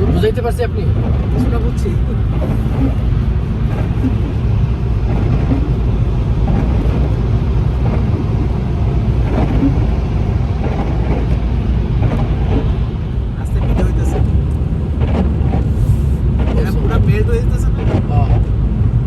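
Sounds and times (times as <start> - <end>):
car engine and tyre rumble: 0.0 - 19.0.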